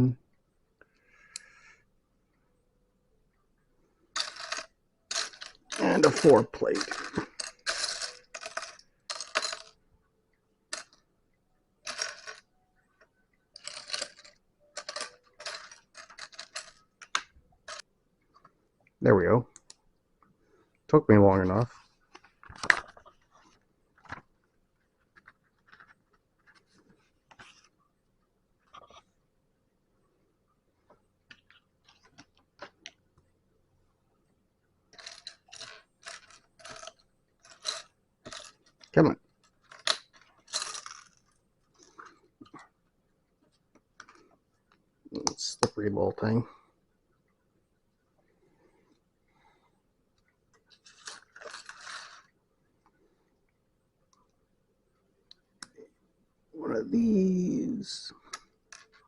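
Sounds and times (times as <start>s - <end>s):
plastic toy bricks clattering: 4.2s - 9.8s, 10.7s - 11.0s, 11.8s - 12.5s, 13.6s - 17.8s, 34.9s - 42.6s.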